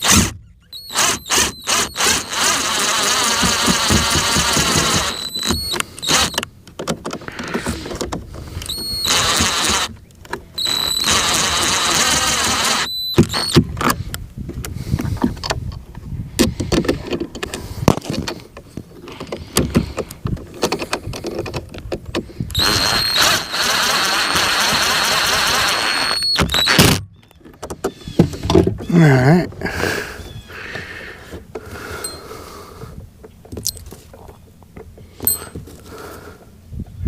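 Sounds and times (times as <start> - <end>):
hands and tools clicking: 0.0 - 14.0, 30.7 - 35.8
high-pitched steady tone: 0.7 - 3.5, 4.6 - 6.4, 8.6 - 9.9, 10.6 - 13.6, 22.6 - 24.4.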